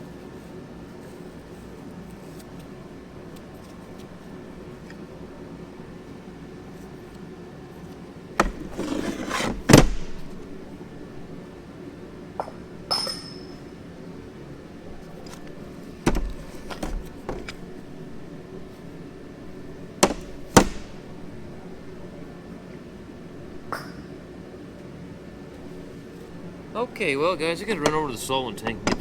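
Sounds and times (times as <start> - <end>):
metal engine parts clanking: 15.0 - 17.9, 27.6 - 29.0.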